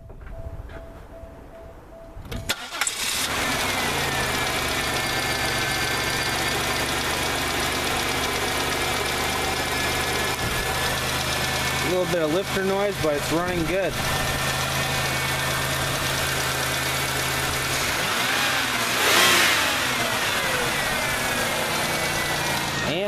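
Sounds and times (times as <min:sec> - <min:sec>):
engine cranking: 0:02.3 - 0:12.2
car engine idling: 0:02.5 - 0:23.0.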